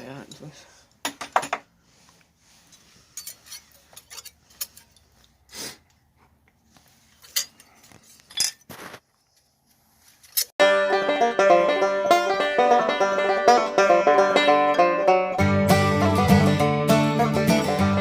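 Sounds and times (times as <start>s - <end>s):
metal hand tools clinking: 3.1s - 5.2s, 7.2s - 8.7s
tools rattling: 3.1s - 5.3s, 7.1s - 8.7s.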